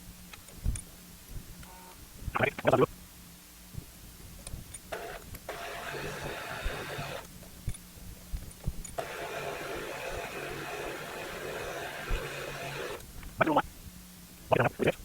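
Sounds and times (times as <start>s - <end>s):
milling machine spindle humming: 4.9s - 7.2s, 9.0s - 13.0s
drill bit cutting metal: 5.0s - 7.2s, 9.0s - 13.0s.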